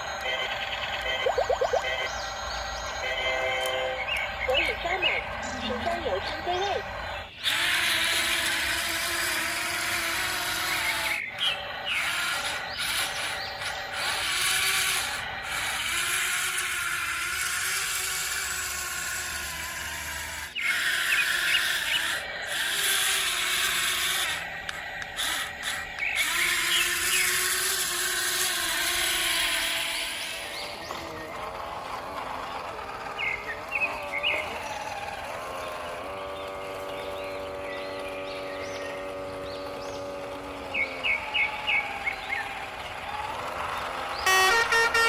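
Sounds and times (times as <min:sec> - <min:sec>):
small electric motors whining: 0:00.0 - 0:45.0.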